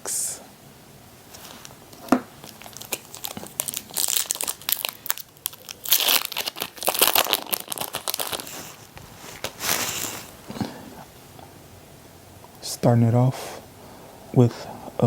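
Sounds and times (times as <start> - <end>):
foil wrapper crinkling and tearing: 1.4 - 10.4.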